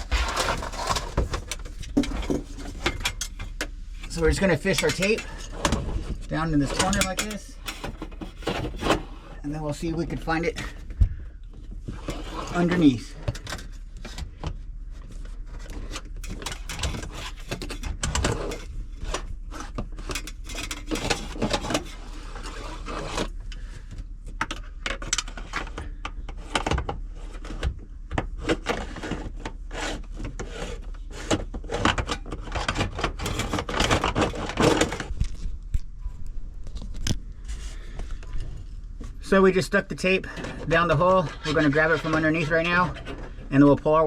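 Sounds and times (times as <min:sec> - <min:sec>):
fish tape rattling and scraping: 0:00.0 - 0:09.1, 0:15.5 - 0:23.7, 0:28.5 - 0:35.8.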